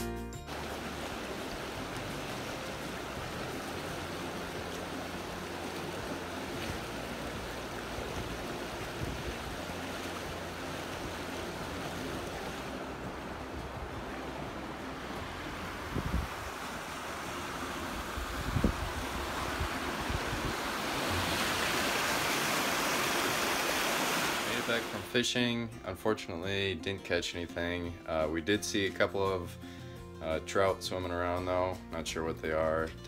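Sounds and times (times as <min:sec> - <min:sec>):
creek water rushing: 0:00.0 - 0:25.6.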